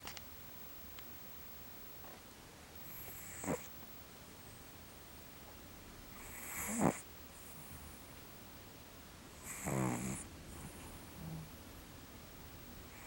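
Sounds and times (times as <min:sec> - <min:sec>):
cat snoring softly: 0:02.8 - 0:03.8, 0:06.1 - 0:07.9, 0:09.4 - 0:11.6.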